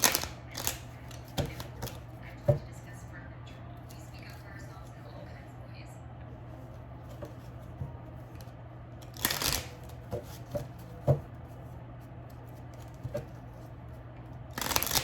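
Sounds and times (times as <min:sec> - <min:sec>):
cards riffle shuffled: 0:00.0 - 0:02.0, 0:08.2 - 0:11.2, 0:14.5 - 0:15.0
cards clicking and tapping: 0:00.0 - 0:02.7, 0:07.1 - 0:11.3, 0:14.5 - 0:15.0.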